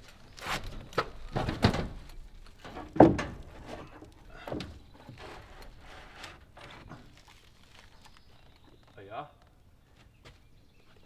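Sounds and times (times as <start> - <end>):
wood knocking and scraping: 0.0 - 8.2
lumber heavy thunk: 0.4 - 7.1.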